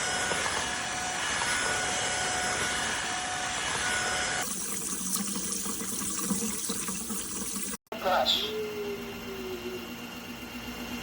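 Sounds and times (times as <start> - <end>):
vacuum mop motor whine: 0.0 - 4.4.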